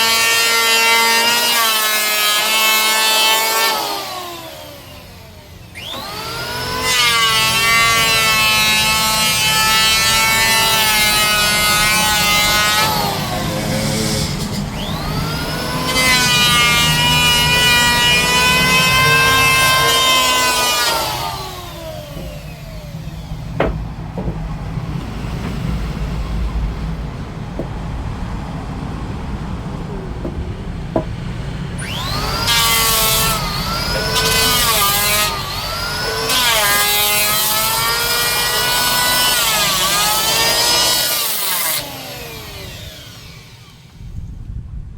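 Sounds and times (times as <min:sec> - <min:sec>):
power tool whining cutting wood: 0:00.0 - 0:25.8, 0:29.8 - 0:44.0
steady low hum: 0:19.9 - 0:32.5.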